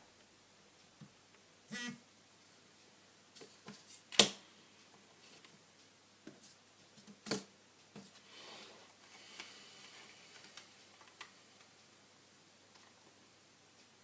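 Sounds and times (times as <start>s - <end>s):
soft rustle: 2.4s - 7.2s.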